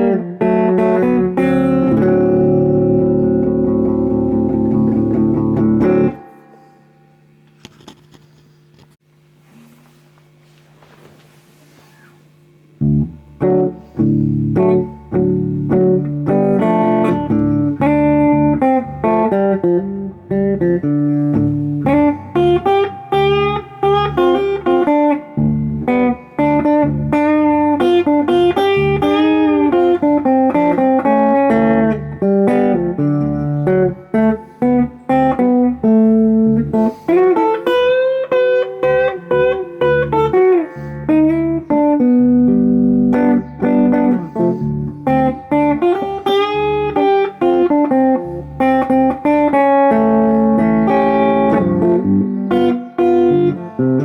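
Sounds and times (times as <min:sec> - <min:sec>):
overdriven electric guitar blues: 0:00.0 - 0:08.2, 0:12.8 - 0:54.0.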